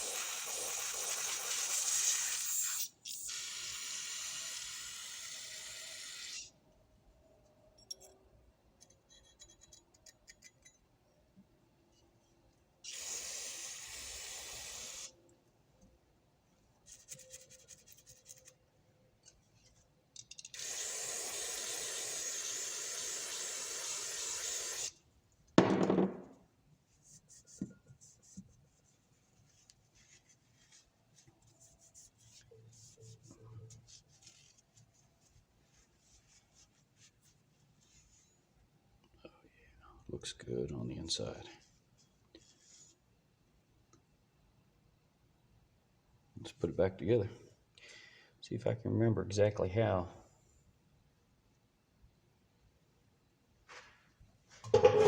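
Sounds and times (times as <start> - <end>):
metal parts rubbing and tapping: 8.8 - 10.9, 54.6 - 55.0
loud knock: 25.6 - 26.3.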